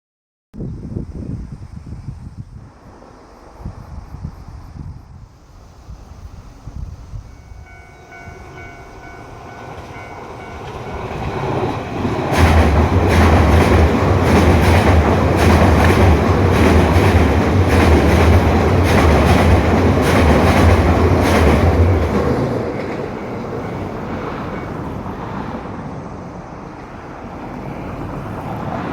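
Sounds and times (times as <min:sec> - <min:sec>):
train rumble: 0:01.7 - 0:28.9
wheels clattering over rail joints: 0:07.7 - 0:25.5.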